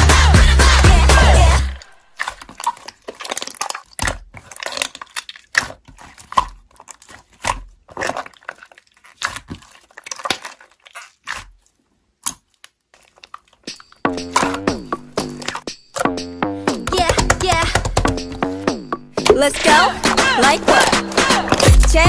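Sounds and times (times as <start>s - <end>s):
slime squeezed by hand: 2.1s - 11.8s.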